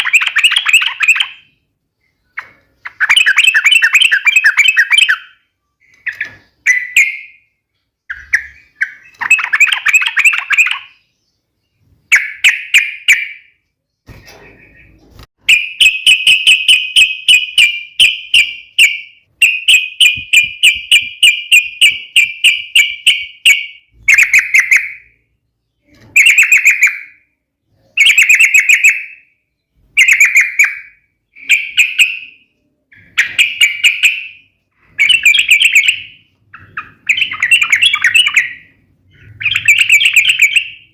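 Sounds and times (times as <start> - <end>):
bird chattering song: 0.0 - 40.9.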